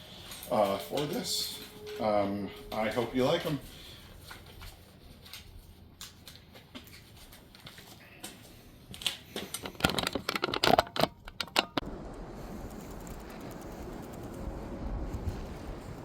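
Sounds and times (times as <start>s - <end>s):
sharp clicks and light knocks: 4.3s - 11.9s.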